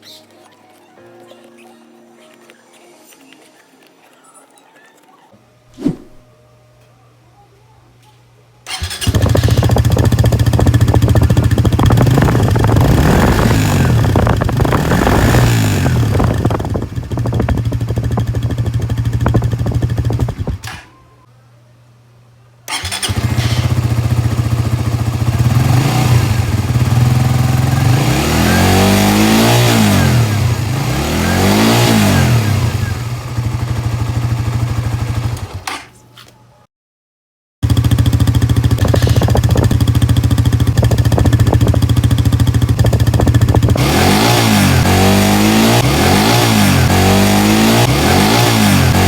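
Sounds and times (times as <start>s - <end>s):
motorcycle engine revving: 8.7s - 20.8s, 22.7s - 35.6s, 37.6s - 49.0s.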